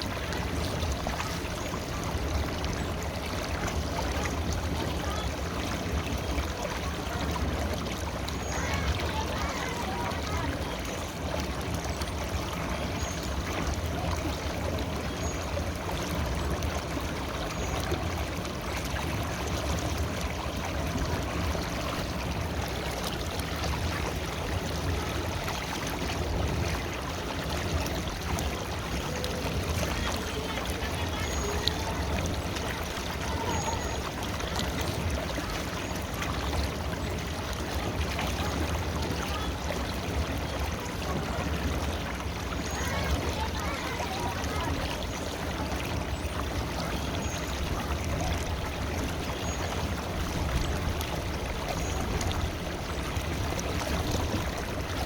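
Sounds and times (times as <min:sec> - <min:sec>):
river water rushing: 0:00.0 - 0:55.0.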